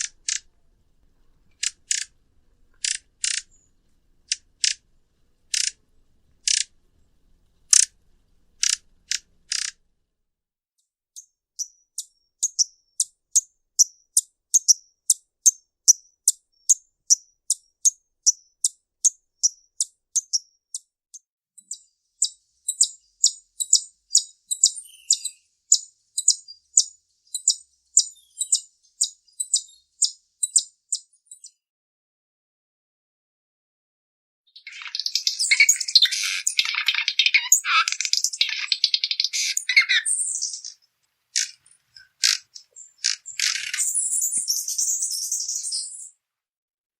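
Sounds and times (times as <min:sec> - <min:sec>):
hummingbird high chip calls: 0:00.0 - 0:00.5, 0:01.6 - 0:02.1, 0:02.8 - 0:03.6, 0:04.3 - 0:04.8, 0:05.5 - 0:05.8, 0:08.6 - 0:09.8, 0:21.7 - 0:31.5, 0:34.6 - 0:40.8, 0:41.4 - 0:46.1.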